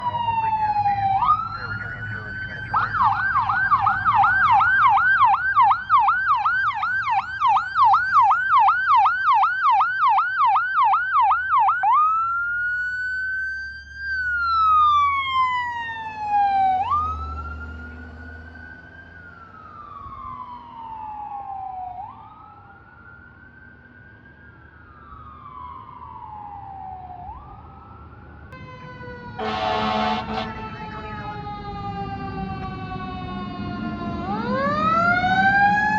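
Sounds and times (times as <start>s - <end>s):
emergency vehicle siren: 0.0s - 35.9s
second siren: 0.0s - 35.9s
vehicle horn blast: 29.4s - 30.6s.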